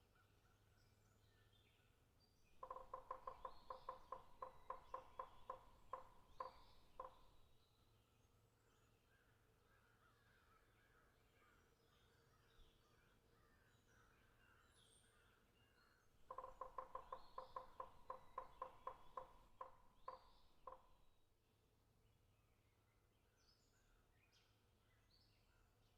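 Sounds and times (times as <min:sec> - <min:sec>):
faint high bird chirping: 0:02.5 - 0:07.8, 0:13.6 - 0:20.8
short clipped bird calls: 0:02.6 - 0:07.4, 0:15.7 - 0:21.0.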